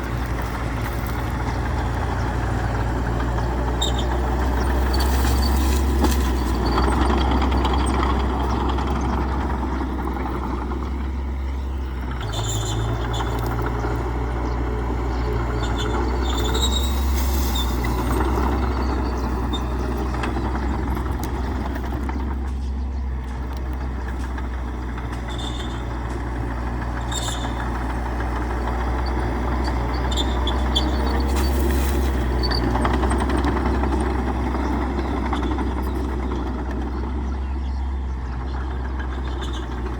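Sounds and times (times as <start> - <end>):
bulldozer engine running: 0.0 - 39.9
metallic squeaks: 3.3 - 8.6, 12.1 - 13.9, 15.1 - 20.8, 25.1 - 26.1, 26.9 - 28.1, 28.8 - 33.8.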